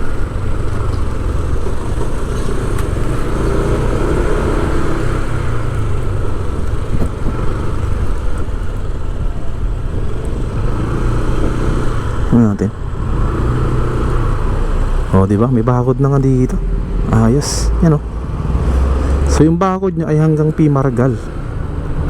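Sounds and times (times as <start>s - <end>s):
vehicle engine and road noise: 0.0s - 22.0s.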